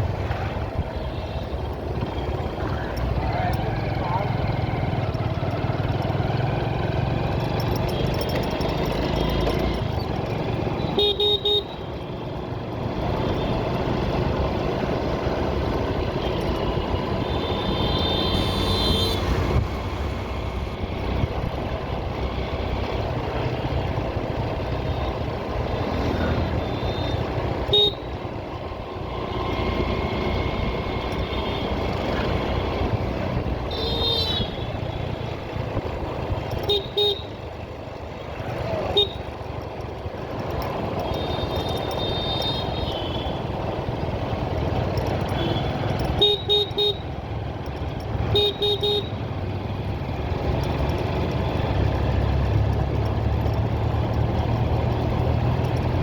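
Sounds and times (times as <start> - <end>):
road traffic noise: 0.0 - 56.0
vehicle horns honking: 10.8 - 11.9, 17.2 - 19.6, 26.6 - 28.2, 33.6 - 35.3, 36.6 - 37.4, 38.9 - 39.4, 41.0 - 43.4, 45.3 - 47.1, 48.2 - 49.2.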